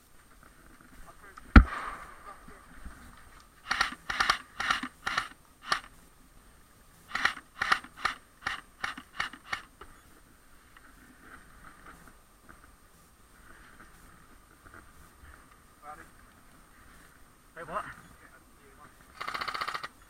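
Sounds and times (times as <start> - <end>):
airsoft gun shots: 1.5 - 2.4.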